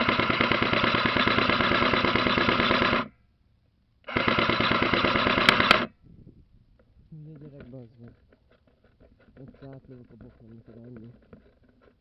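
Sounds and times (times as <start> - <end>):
airsoft gun automatic fire: 0.0 - 3.1, 4.1 - 5.9
sharp clicks: 4.1 - 5.9.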